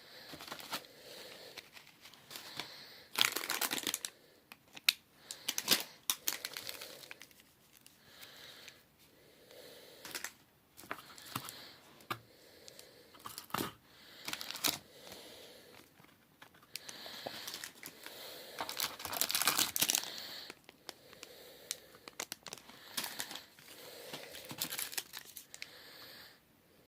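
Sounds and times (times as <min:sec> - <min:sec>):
plastic crinkling and crackling: 0:01.5 - 0:08.0, 0:12.7 - 0:14.8, 0:15.8 - 0:25.6.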